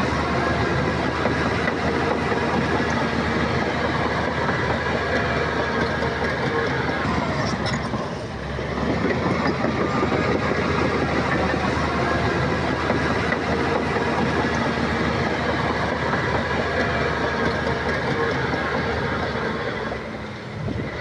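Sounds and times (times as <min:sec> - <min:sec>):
heavy diesel machinery clattering: 0:00.0 - 0:21.0.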